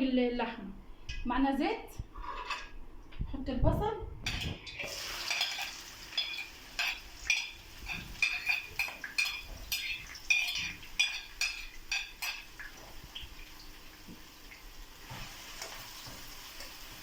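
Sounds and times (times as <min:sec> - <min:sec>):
spoon scraping and clinking a pan: 0:04.3 - 0:12.6
onions frying in oil: 0:04.7 - 0:17.0.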